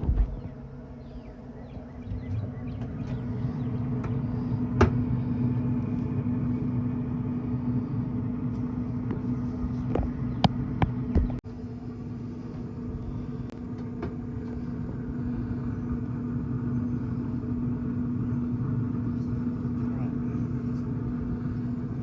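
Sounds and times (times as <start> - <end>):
low mechanical hum: 0.0 - 22.0
low rumble: 0.0 - 22.0.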